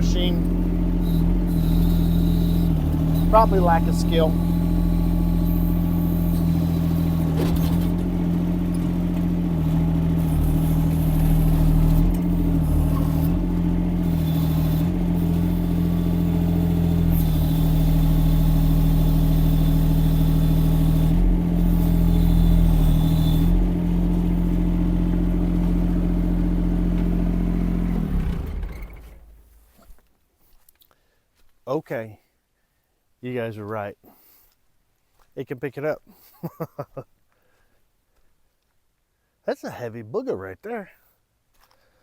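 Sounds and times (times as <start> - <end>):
excavator engine under load: 0.0 - 30.0.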